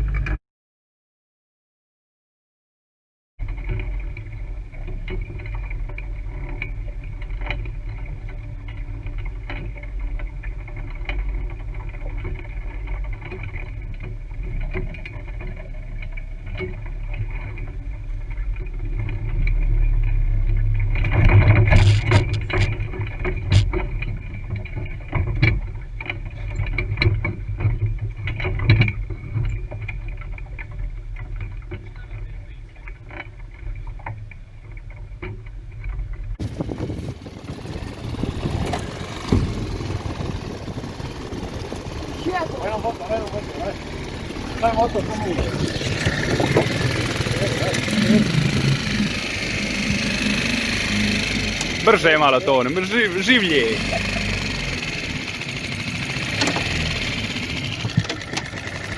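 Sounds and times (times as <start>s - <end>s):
boat engine running: 36.4s - 58.9s
knocking and clatter: 54.6s - 58.9s.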